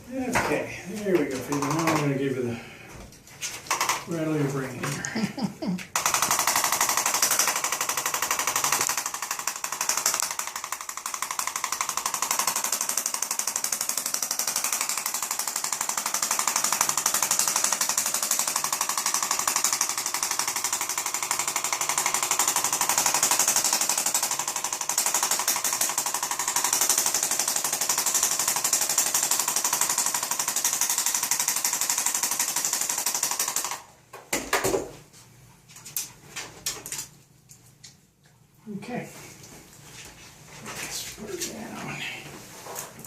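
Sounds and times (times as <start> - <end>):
electric percussion massager tapping: 1.2 - 2.0, 3.7 - 4.1, 5.9 - 13.2.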